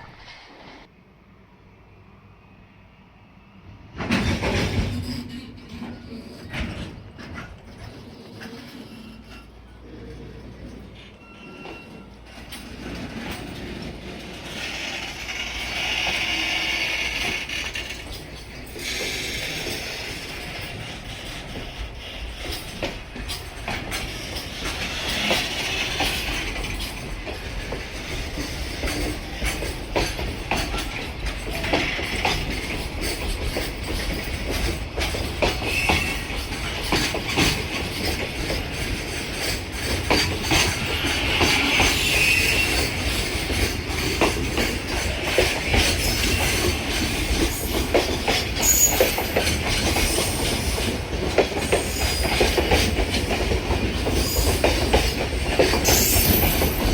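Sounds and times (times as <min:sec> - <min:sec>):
train wheels clattering over rails: 0:03.8 - 0:09.7, 0:10.3 - 0:56.9
wheel squeal: 0:07.3 - 0:10.0, 0:10.9 - 0:12.7, 0:35.5 - 0:36.5, 0:40.2 - 0:44.1, 0:44.8 - 0:50.8, 0:55.8 - 0:56.9.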